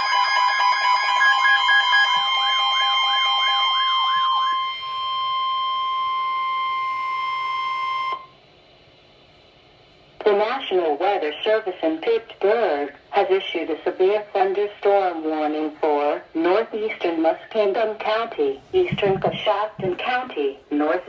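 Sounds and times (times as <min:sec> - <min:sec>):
siren-like warble: 0:00.0 - 0:08.3.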